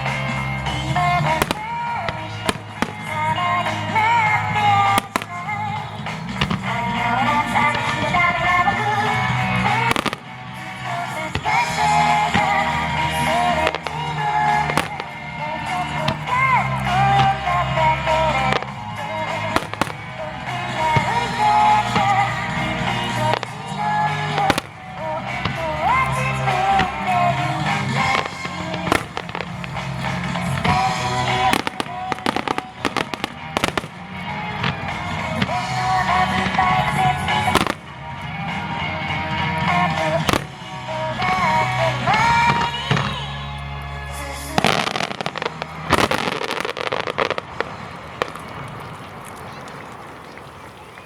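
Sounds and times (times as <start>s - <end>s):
music with melody and bass: 0.0s - 47.4s
fireworks bangs: 0.0s - 50.2s.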